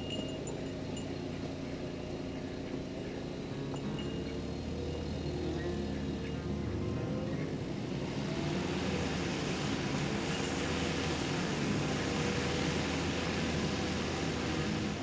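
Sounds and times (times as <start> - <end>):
skid steer engine under load: 0.0 - 15.0.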